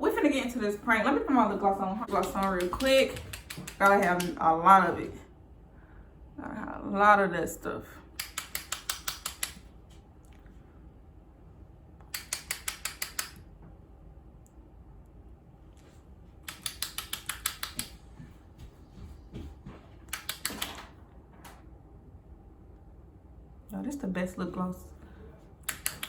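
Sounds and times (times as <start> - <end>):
rapid even clicking of lip gloss tube: 2.1 - 4.3, 8.2 - 9.6, 12.1 - 13.4, 16.5 - 17.9, 25.6 - 26.0.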